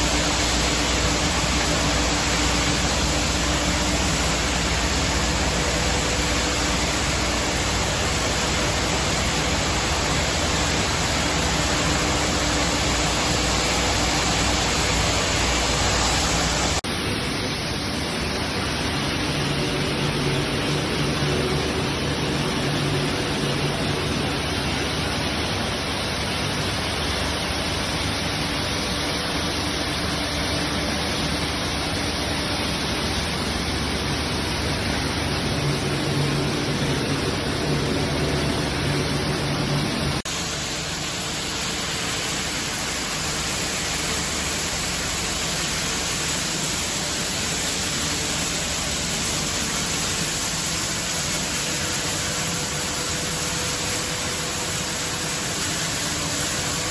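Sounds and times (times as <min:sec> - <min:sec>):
machinery hissing and humming: 0:00.0 - 0:56.9.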